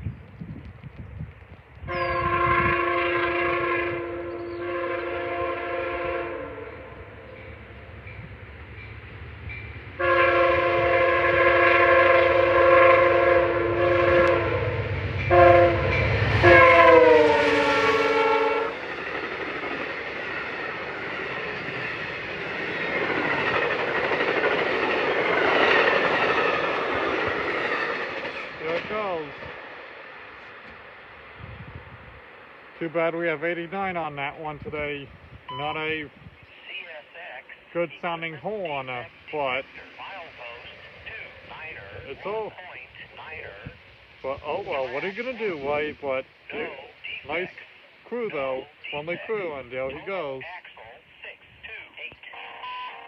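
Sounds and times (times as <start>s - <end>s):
train rail rumble: 0.0s - 53.0s
locomotive air horn: 1.9s - 7.1s, 10.0s - 18.8s
train wheel clatter: 14.1s - 30.8s.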